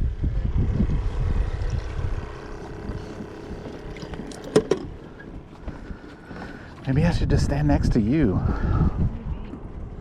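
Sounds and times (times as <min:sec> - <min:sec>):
low engine drone: 0:00.0 - 0:07.5
wind noise on microphone: 0:00.0 - 0:10.0.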